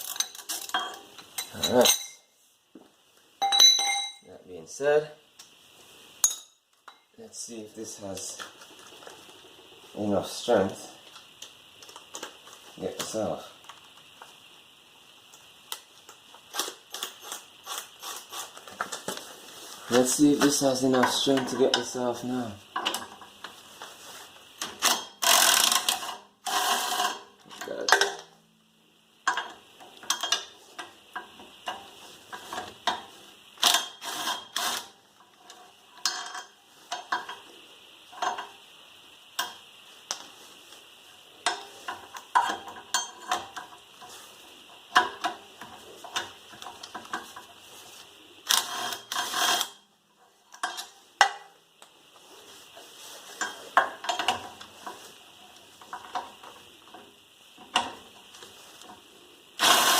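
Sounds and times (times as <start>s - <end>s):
ratchet clicking: 16.4s - 18.6s, 24.6s - 27.2s, 33.6s - 34.9s.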